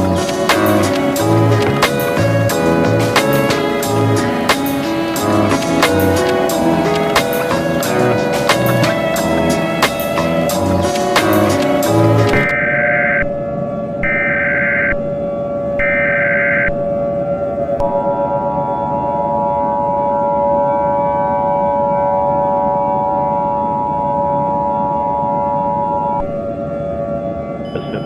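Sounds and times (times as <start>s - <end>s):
buzzy data bursts: 0.0s - 12.5s
low drone: 0.0s - 28.0s
two-tone attention signal: 27.6s - 28.0s.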